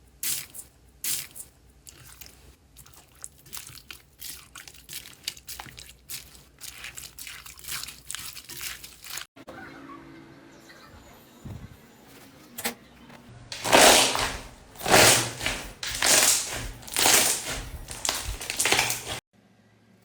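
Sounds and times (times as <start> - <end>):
slime squishing by hand: 0.2 - 9.3, 13.5 - 19.2.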